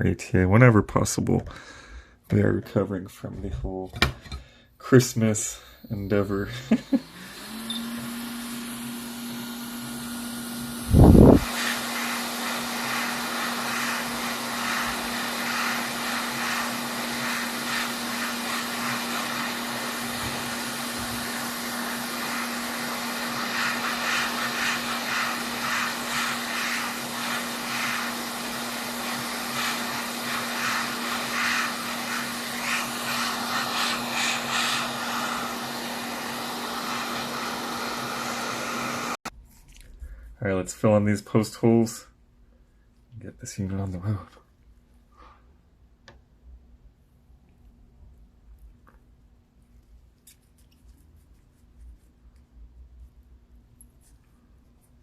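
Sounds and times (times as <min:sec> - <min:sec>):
electric blower humming: 0:05.9 - 0:39.3.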